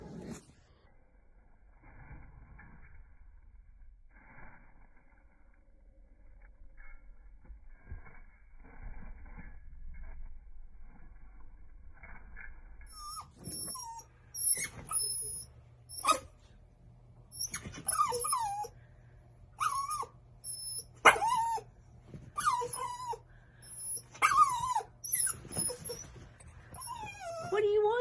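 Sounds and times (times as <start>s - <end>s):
dog whining: 12.9s - 16.3s, 17.3s - 18.8s, 19.6s - 21.7s, 22.4s - 28.0s.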